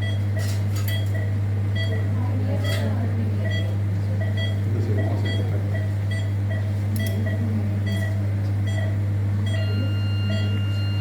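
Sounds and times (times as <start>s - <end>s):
low electrical hum: 0.0s - 11.0s
patient monitor beeping: 0.0s - 11.0s.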